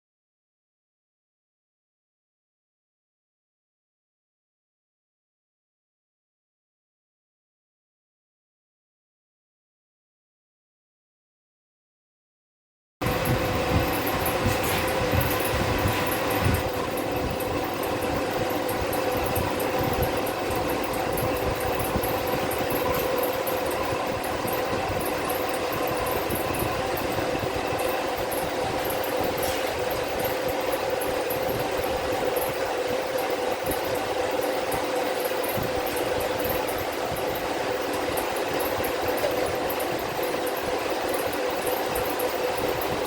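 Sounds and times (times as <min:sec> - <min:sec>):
fast even ticking: 0:13.0 - 0:43.0
machine humming: 0:13.0 - 0:43.0.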